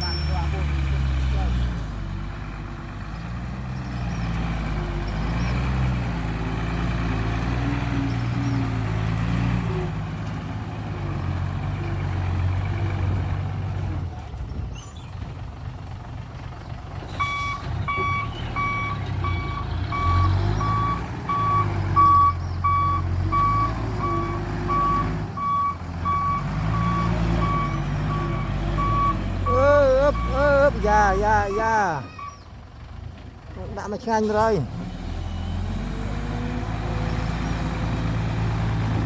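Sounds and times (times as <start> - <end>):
truck engine running: 0.0 - 39.0
reversing alarm beeping: 17.2 - 30.8.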